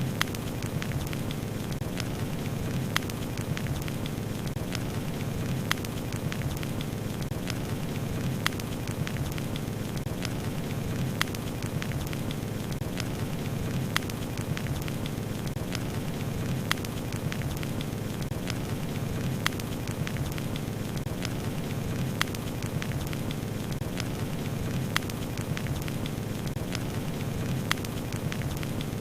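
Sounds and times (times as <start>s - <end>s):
fire popping: 0.0s - 29.0s
wood fire crackling: 0.0s - 29.0s.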